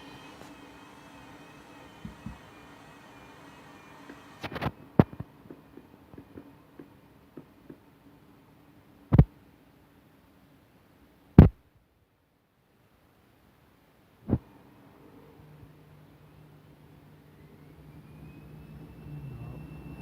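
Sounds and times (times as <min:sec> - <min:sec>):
washing machine spinning: 0:00.0 - 0:07.7, 0:14.8 - 0:20.0.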